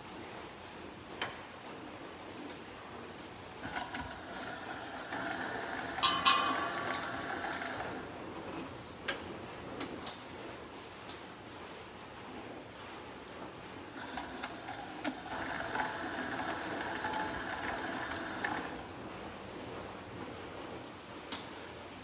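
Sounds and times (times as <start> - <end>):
winch motor whining: 3.6 - 8.1, 14.0 - 18.9.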